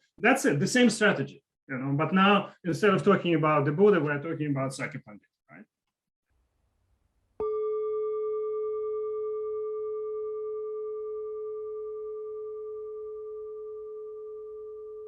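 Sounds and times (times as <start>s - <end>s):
singing bowl ringing: 7.4s - 15.0s.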